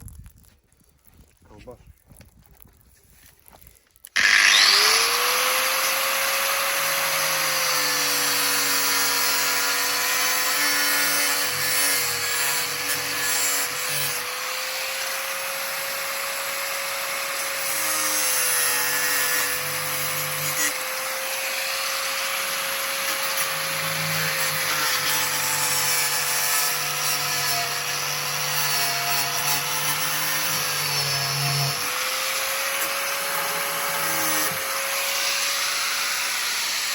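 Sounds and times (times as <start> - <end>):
power tool cutting pipe: 4.0 - 36.9.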